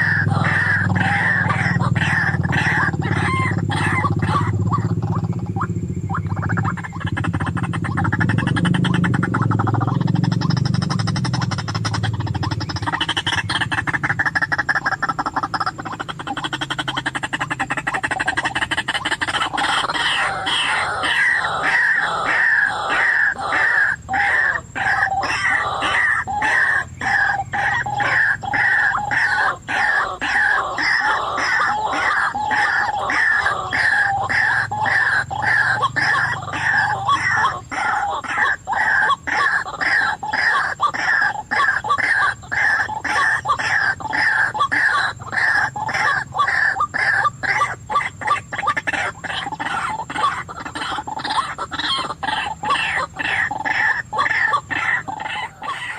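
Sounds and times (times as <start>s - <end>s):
waterhen calling: 0.0s - 55.9s.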